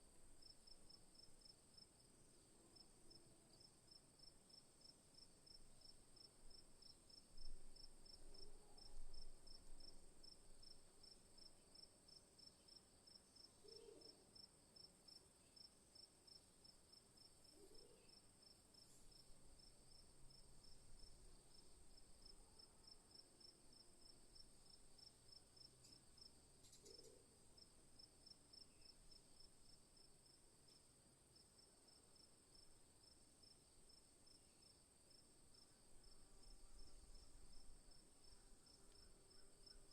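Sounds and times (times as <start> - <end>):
pulsed cricket-like chirp: 5.5 - 30.8, 32.2 - 39.9
insect buzz: 31.9 - 39.9.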